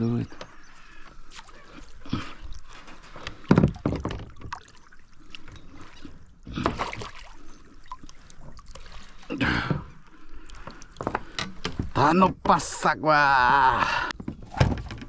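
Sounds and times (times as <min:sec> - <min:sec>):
water splashing: 0:00.8 - 0:12.0
knocks in a boat: 0:03.5 - 0:04.5.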